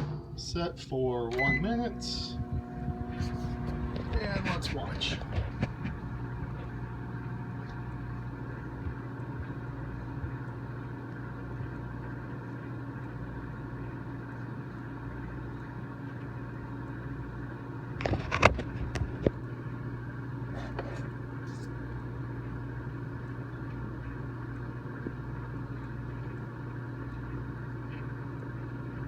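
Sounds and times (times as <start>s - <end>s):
short knocks: 0.0s - 0.6s
microwave oven humming: 0.0s - 29.0s.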